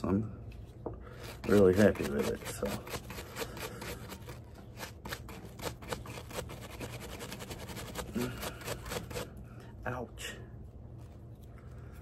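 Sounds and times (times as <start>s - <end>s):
small brush scrubbing a bolt: 1.2s - 9.3s.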